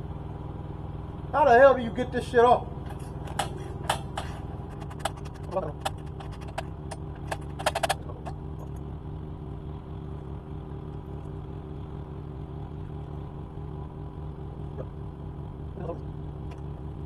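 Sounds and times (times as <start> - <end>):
steady low hum: 0.0 - 17.0
short clatter: 2.8 - 8.8
sharp clicks of prying plastic: 2.9 - 8.4.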